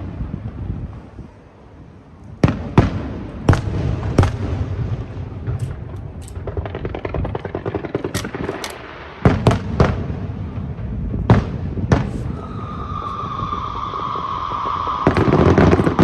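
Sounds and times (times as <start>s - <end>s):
fireworks bangs: 2.4s - 10.2s, 10.8s - 16.0s
fireworks crackling: 11.8s - 16.0s
high whistle: 12.3s - 16.0s.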